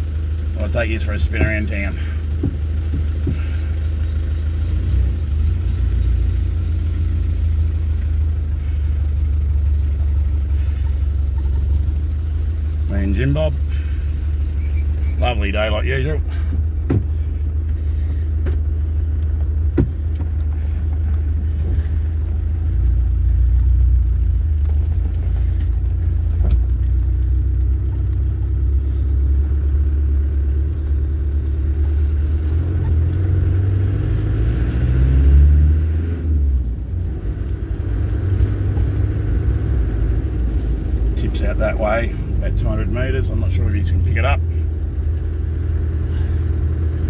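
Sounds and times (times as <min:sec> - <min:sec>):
diesel engine droning: 0:00.0 - 0:47.0
sharp knocks: 0:16.9 - 0:17.1.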